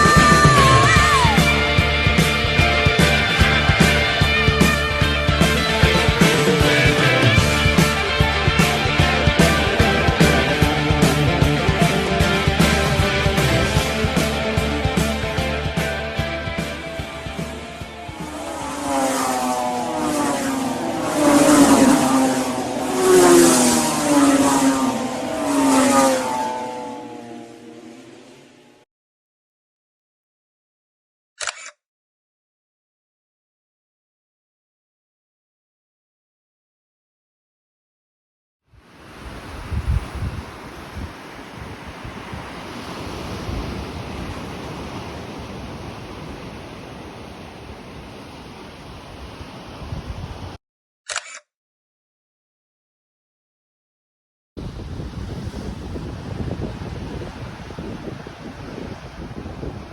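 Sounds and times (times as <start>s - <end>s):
surf washing ashore: 0.0s - 28.6s, 38.8s - 50.6s, 54.6s - 59.9s
vehicle engine running: 1.5s - 28.7s
wind on microphone: 38.8s - 50.6s, 54.6s - 59.9s.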